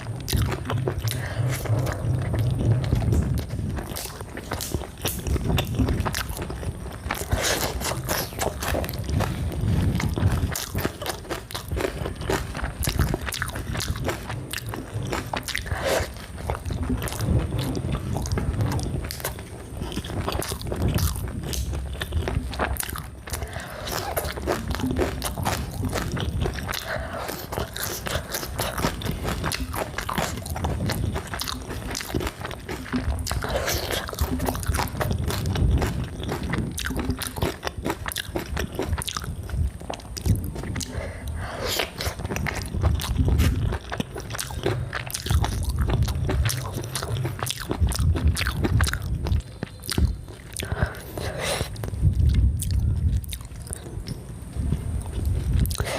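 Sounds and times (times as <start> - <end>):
person chewing food: 0.0 - 55.9.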